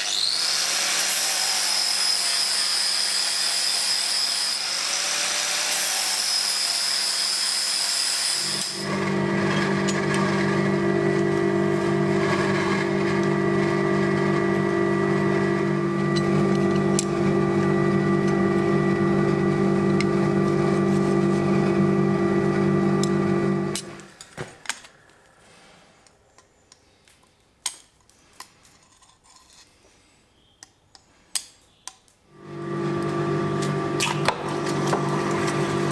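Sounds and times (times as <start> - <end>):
power tool grinding: 0.0 - 24.1, 32.4 - 35.9
machine hum: 8.5 - 24.3, 32.3 - 35.9.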